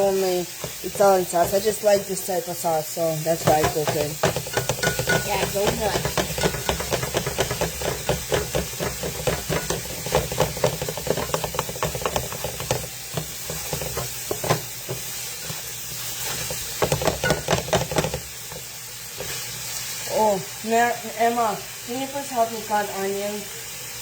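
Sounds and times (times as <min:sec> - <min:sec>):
food sizzling in a pan: 0:00.0 - 0:24.0
utensil scraping a pan: 0:03.3 - 0:19.6.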